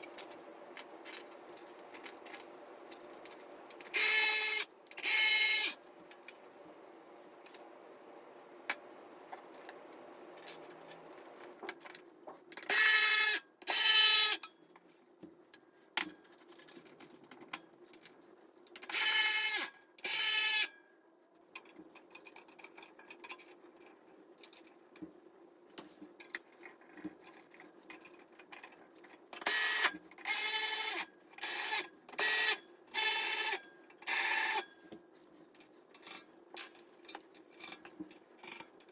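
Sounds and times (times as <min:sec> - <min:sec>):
parts clicking and rattling: 0:00.0 - 0:04.1.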